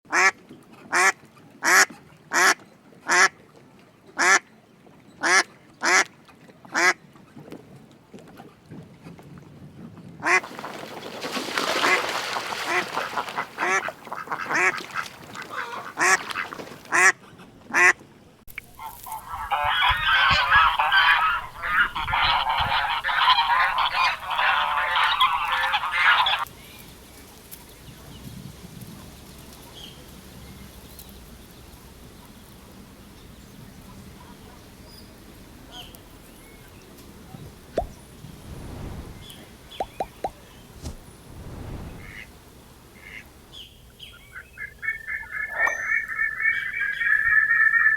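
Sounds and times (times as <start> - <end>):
many overlapping duck calls: 0.1 - 3.4, 4.2 - 4.5, 5.2 - 6.1, 6.7 - 7.0, 10.2 - 10.5, 11.8 - 18.0, 18.8 - 26.5, 43.0 - 43.2, 44.1 - 47.9
duck quacking: 10.2 - 10.5, 12.6 - 18.0, 18.8 - 26.5, 42.0 - 42.3, 43.0 - 43.3, 44.3 - 47.9
faint background noise: 10.2 - 47.9.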